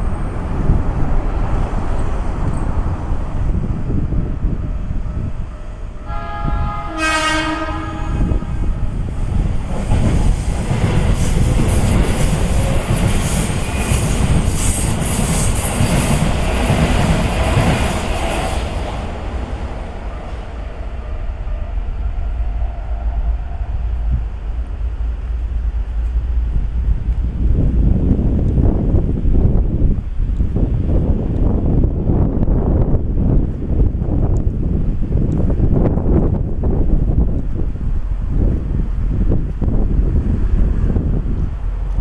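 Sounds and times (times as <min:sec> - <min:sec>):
train running noise: 0:00.0 - 0:42.0
train horn blast: 0:05.9 - 0:08.9.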